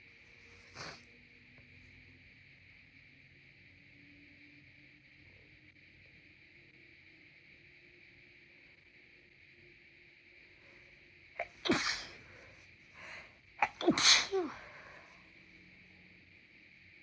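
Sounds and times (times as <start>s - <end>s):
person sneezing: 0.6s - 1.0s, 11.4s - 15.0s.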